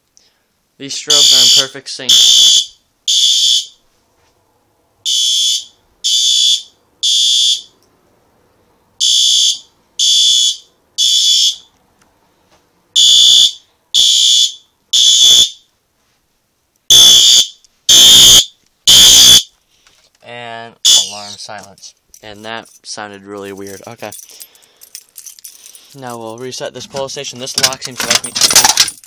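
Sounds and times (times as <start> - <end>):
fire alarm horn blasts: 1.1 - 3.8, 5.0 - 7.8, 9.0 - 11.7, 13.0 - 15.6, 16.9 - 19.5, 20.8 - 21.1.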